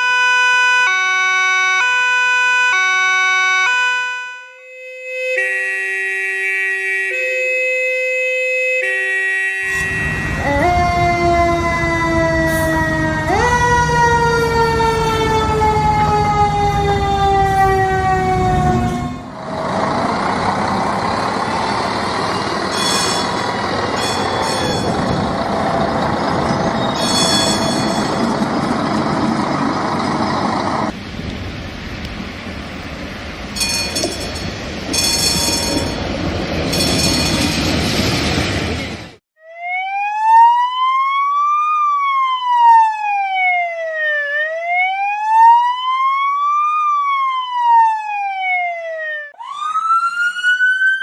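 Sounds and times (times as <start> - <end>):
fire truck siren wailing: 0.0 - 31.5, 39.4 - 51.0
tram running on rails: 9.7 - 39.2
tram bell ringing: 21.4 - 29.0, 33.5 - 37.8.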